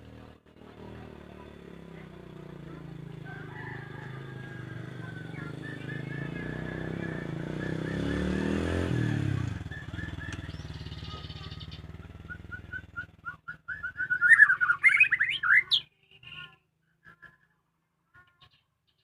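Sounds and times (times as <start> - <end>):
passing vehicle engine: 0.0 - 15.8
bird singing: 3.6 - 17.6.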